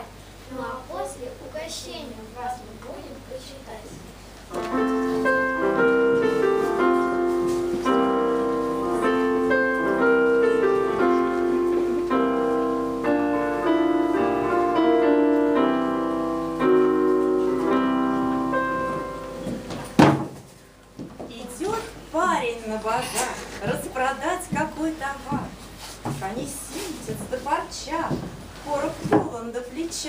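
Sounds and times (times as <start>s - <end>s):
piano playing: 4.5s - 25.7s
sharp knock: 20.0s - 20.5s.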